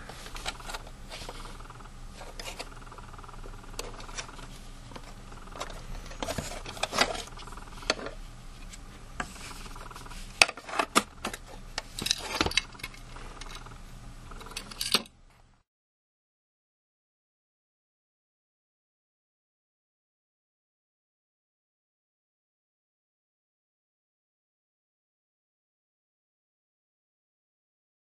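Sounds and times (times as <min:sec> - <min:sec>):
plastic objects knocking and clattering: 0:09.2 - 0:13.6.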